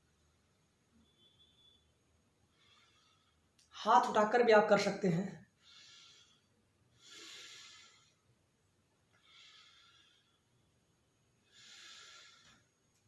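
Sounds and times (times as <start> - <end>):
slow deep breathing: 2.4 - 3.6, 5.6 - 8.5, 9.1 - 10.8, 11.4 - 13.0.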